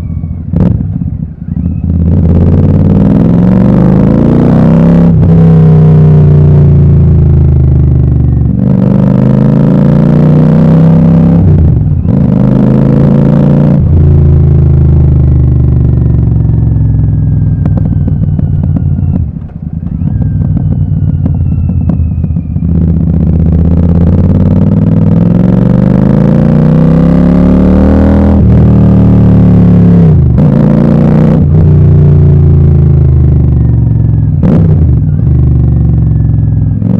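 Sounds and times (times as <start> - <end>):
motorcycle engine revving: 0.0 - 36.9
exhaust crackling and popping: 15.5 - 25.1.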